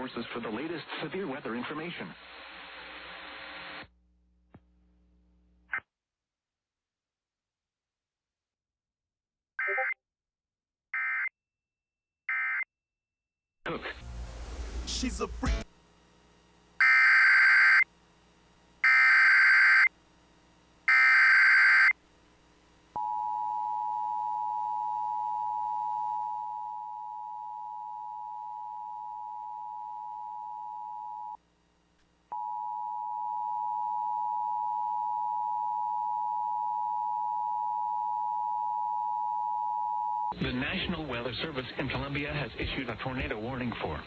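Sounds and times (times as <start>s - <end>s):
two-tone attention signal: 9.6s - 10.0s.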